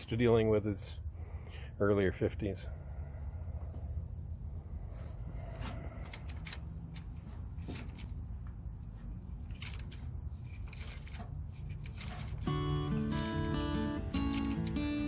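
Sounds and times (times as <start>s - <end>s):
low steady hum: 0.0s - 15.0s
tools clicking and scraping: 5.6s - 15.0s.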